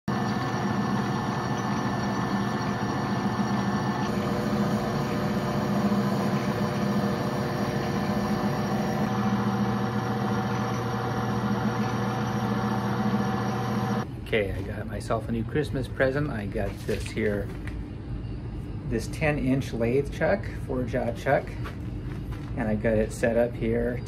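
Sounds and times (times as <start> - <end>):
metal lathe motor hum: 0.1 - 14.1.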